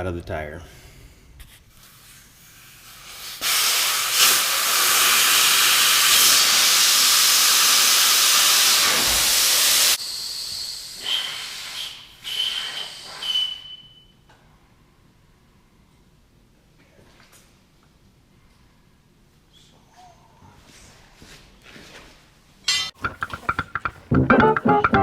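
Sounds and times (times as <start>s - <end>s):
air hissing out of tire: 1.9s - 13.7s.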